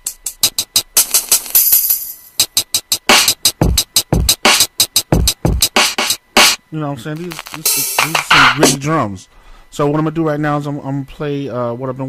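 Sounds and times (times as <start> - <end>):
hi-hat ticks: 0.0 - 6.6, 7.2 - 8.8
deep booming kick drum: 3.4 - 5.8.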